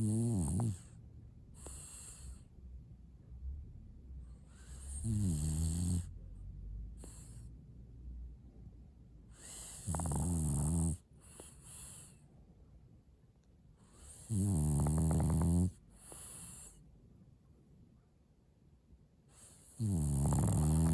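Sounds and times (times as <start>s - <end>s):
dog snoring: 0.0s - 2.4s, 4.3s - 6.2s, 7.0s - 7.5s, 9.3s - 12.2s, 13.8s - 16.8s, 19.3s - 20.9s
dog breathing softly: 0.0s - 2.7s, 4.2s - 6.1s, 6.9s - 7.6s, 9.3s - 12.4s, 13.7s - 16.9s, 19.3s - 20.9s.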